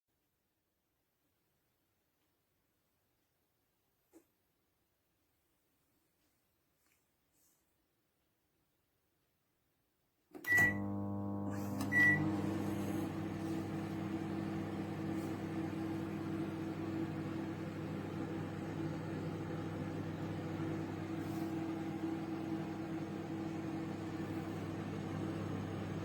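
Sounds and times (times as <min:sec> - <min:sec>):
microwave hum and fan: 0:10.4 - 0:26.0
microwave beeps: 0:10.5 - 0:13.1.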